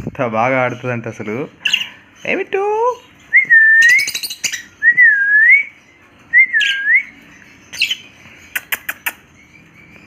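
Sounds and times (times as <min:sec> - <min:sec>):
parrot whistling: 0:03.3 - 0:05.7, 0:06.3 - 0:08.0.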